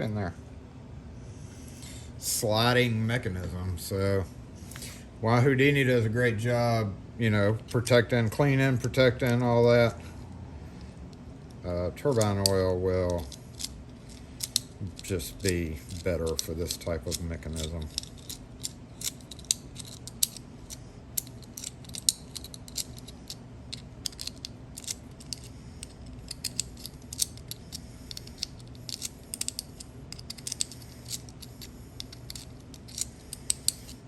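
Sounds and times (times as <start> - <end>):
steady low hum: 0.0 - 34.0
metal lock clicks and scrapes: 12.2 - 34.0.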